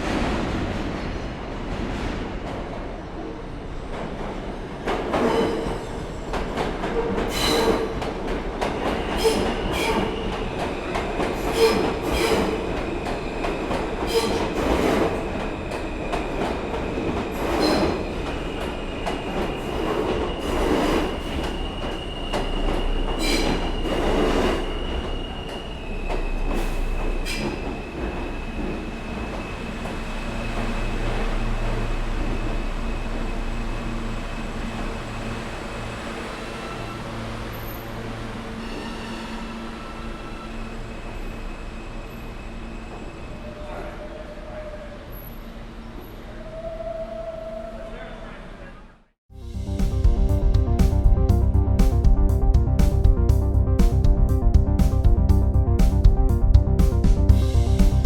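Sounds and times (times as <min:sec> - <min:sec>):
subway train rumble: 0:00.0 - 0:58.0
high wheel squeal: 0:19.5 - 0:28.5, 0:36.4 - 0:45.5.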